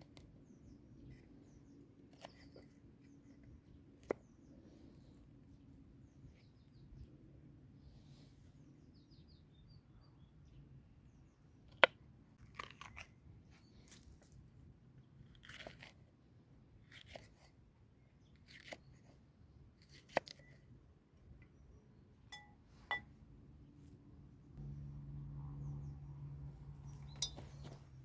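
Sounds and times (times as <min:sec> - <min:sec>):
person eating crunches: 0:12.4 - 0:13.1, 0:15.2 - 0:16.1.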